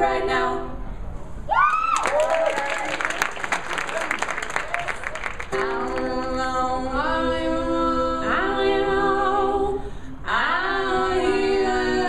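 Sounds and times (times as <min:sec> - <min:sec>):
voices singing in harmony: 0:00.0 - 0:00.8, 0:05.6 - 0:12.0.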